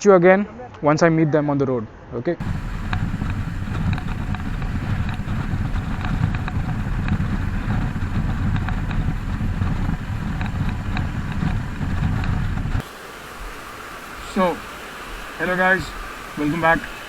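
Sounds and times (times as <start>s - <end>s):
motorcycle engine running: 2.4s - 13.5s
wind rumble on microphone: 2.4s - 17.0s.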